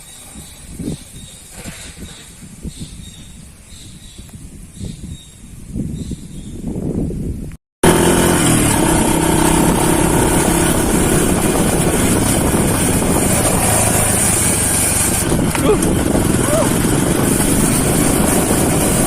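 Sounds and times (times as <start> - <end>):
wind noise on microphone: 0.0 - 19.0
motorcycle engine running: 7.8 - 19.0.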